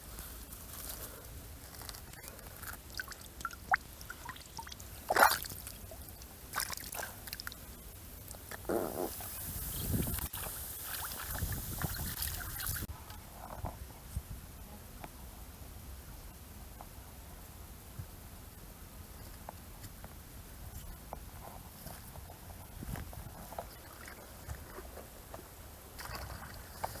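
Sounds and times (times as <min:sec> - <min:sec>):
water sloshing and trickling: 0:01.8 - 0:07.6, 0:23.5 - 0:24.9, 0:26.0 - 0:27.0.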